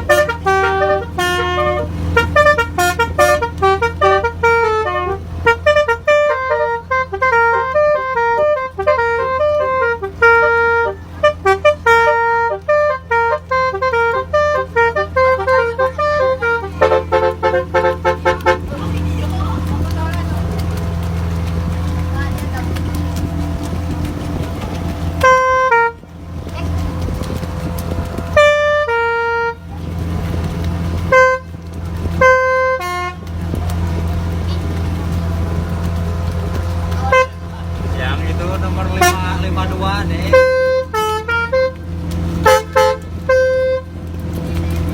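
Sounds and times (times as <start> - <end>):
multi-trumpet electric horn tune: 0.0 - 18.8, 25.2 - 26.0, 28.3 - 29.6, 31.1 - 31.6, 32.2 - 33.3, 37.0 - 37.5, 38.8 - 43.9.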